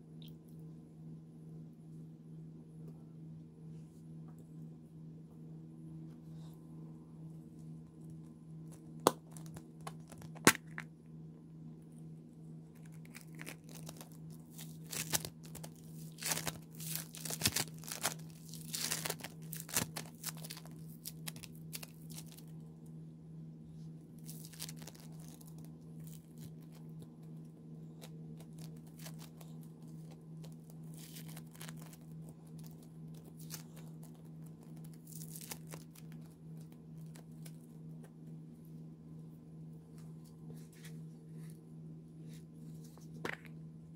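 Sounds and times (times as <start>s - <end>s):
steady low hum: 0.0s - 43.9s
slime crackling when squished: 12.8s - 22.4s.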